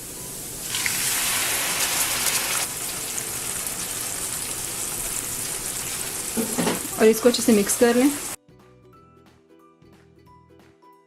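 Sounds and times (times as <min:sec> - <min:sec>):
tomato paste sizzling in hot oil: 0:00.0 - 0:08.4.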